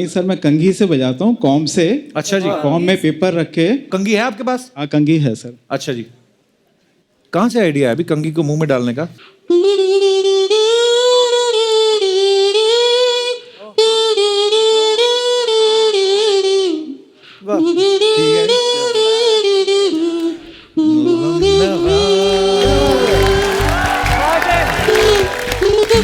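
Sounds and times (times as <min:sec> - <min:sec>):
backing music with low beat: 0:21.3 - 0:26.0.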